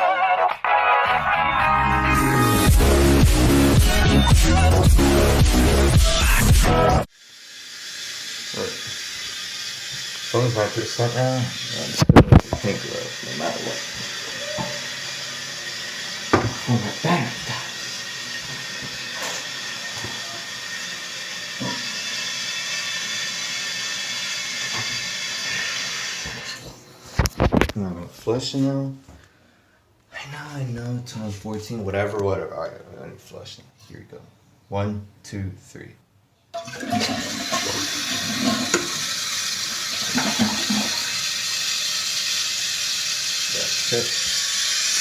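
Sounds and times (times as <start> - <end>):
toilet tank refilling hiss: 5.0 - 26.8, 36.6 - 45.0.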